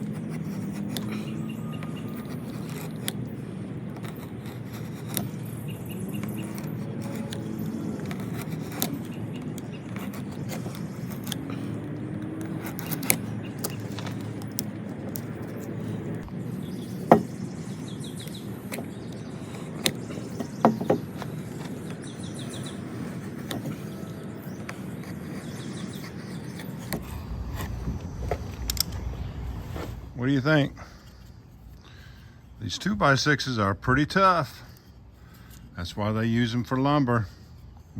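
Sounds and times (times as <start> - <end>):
knife blade scraping wood: 0.0 - 30.0
birds chirping faintly: 0.0 - 37.9
sharp wood knocks: 17.0 - 17.4.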